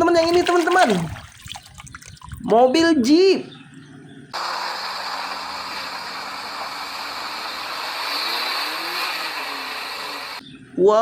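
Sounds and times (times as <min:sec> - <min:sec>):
water spray hissing: 0:04.4 - 0:10.4.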